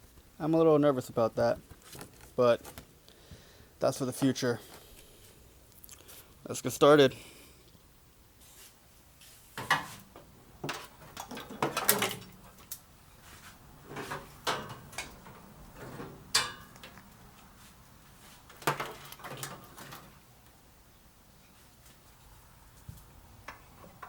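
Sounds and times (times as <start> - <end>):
objects being handled: 1.5 - 2.9, 8.4 - 20.2.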